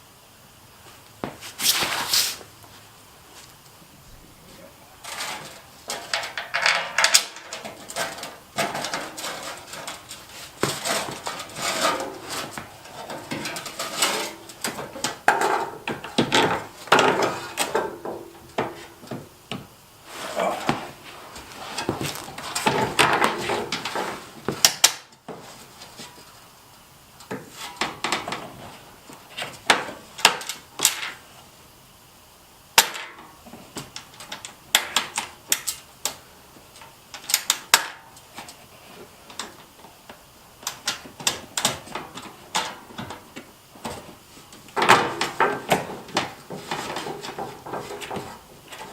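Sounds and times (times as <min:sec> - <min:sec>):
plastic splitter knocking and scraping: 0:05.1 - 0:19.7.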